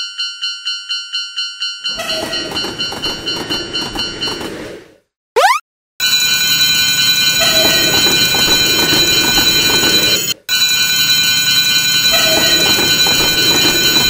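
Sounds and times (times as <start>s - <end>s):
railroad crossing bell ringing: 0.0s - 4.4s, 6.0s - 14.0s
passing train rumble: 7.1s - 14.0s.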